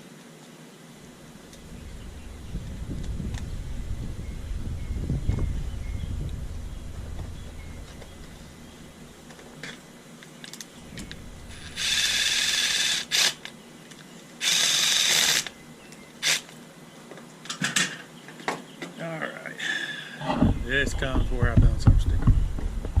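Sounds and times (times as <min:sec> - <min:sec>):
rapid ratcheting clicks: 0:11.6 - 0:13.5, 0:14.4 - 0:15.6.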